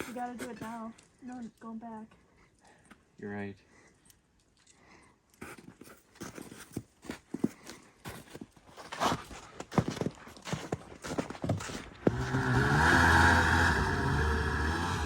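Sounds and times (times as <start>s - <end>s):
knocks and scuffs: 5.5s - 12.2s.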